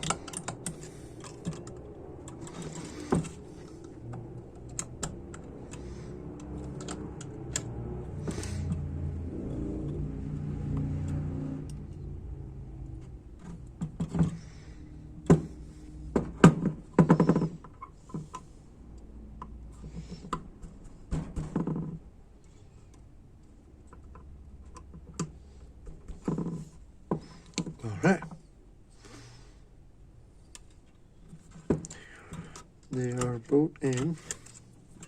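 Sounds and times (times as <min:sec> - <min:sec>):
small metal clicks and taps: 0:00.0 - 0:07.9, 0:21.6 - 0:25.4, 0:31.6 - 0:35.0.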